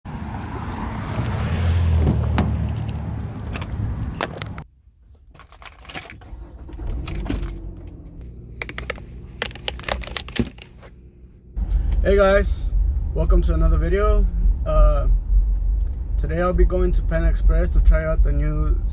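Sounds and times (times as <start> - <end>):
low car rumble: 0.1 - 4.7, 6.3 - 18.9
keys jangling: 5.4 - 6.2.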